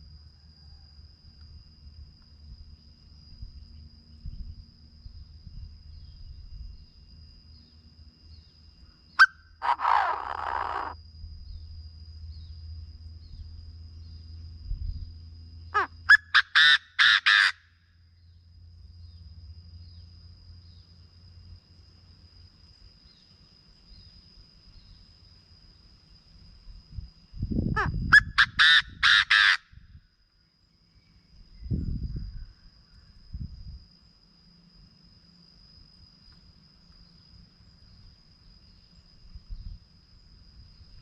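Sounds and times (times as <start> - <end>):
bird calling: 9.2 - 11.0, 15.8 - 17.6, 27.8 - 29.6.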